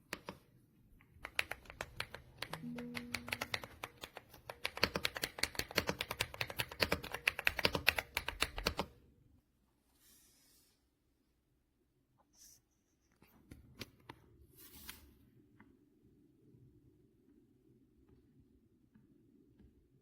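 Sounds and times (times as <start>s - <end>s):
fast mechanical keyboard typing: 1.2s - 8.9s.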